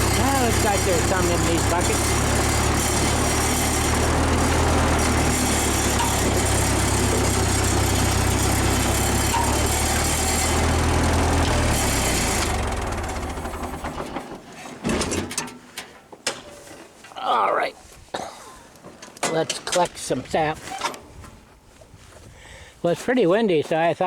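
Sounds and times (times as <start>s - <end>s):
tractor engine running: 0.0s - 15.3s.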